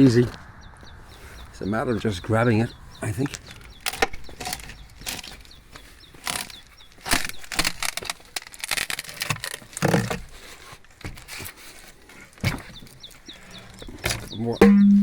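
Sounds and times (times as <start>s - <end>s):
wooden door frame cracking: 6.2s - 10.3s.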